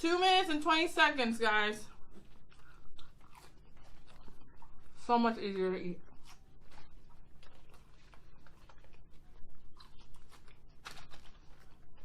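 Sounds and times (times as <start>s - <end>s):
people chewing food: 1.0s - 12.0s.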